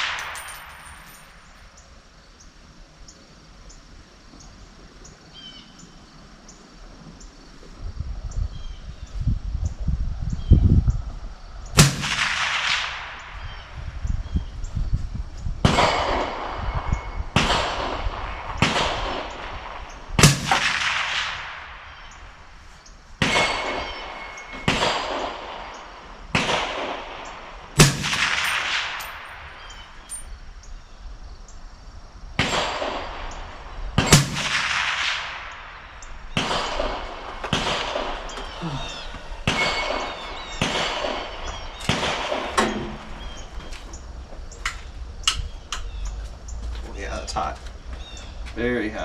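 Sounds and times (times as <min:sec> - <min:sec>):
rifle shots with echo: 0:00.0 - 0:01.4, 0:11.8 - 0:13.8, 0:15.6 - 0:22.2, 0:23.2 - 0:30.1, 0:32.4 - 0:43.5.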